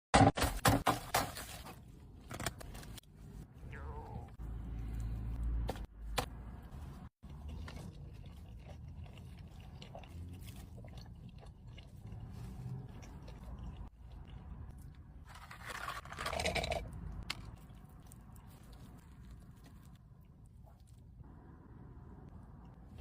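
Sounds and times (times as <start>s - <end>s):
person chewing and crunching food: 6.3s - 21.2s.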